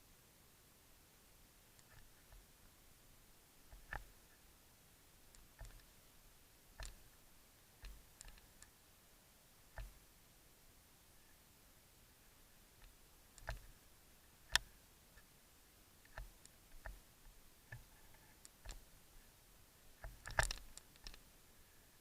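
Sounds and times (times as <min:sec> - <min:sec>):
sharp clicks and snaps: 0:01.7 - 0:02.1, 0:06.8 - 0:07.0, 0:07.8 - 0:08.7, 0:12.8 - 0:13.7, 0:20.0 - 0:21.2.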